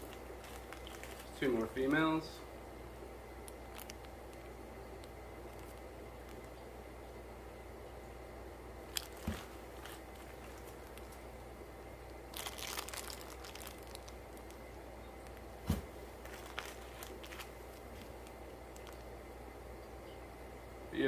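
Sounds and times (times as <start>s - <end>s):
plastic bags crinkling: 0.0s - 2.1s, 3.4s - 6.5s, 8.9s - 11.3s, 12.1s - 19.1s
soft thumps: 9.2s - 10.0s, 15.6s - 16.0s.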